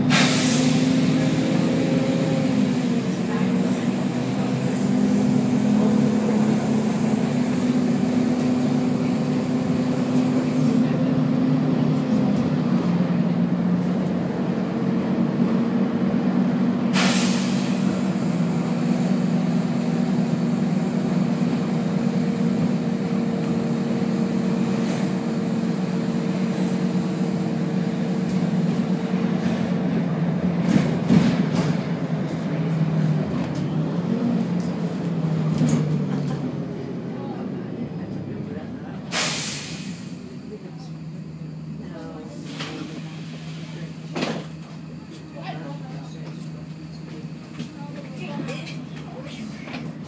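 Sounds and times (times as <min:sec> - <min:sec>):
bus engine running: 0:00.0 - 0:50.0
air hiss: 0:39.1 - 0:40.2.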